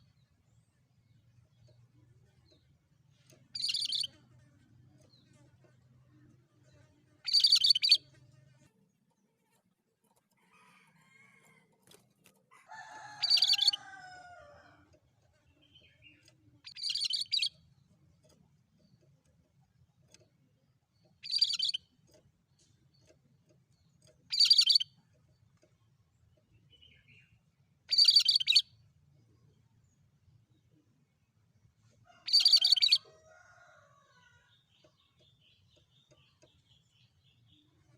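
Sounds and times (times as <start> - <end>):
songbird calling in high bursts: 3.6 - 4.1, 7.3 - 8.0, 13.2 - 13.8, 16.7 - 17.5, 21.2 - 21.8, 24.3 - 24.9, 27.9 - 28.7, 32.2 - 33.1.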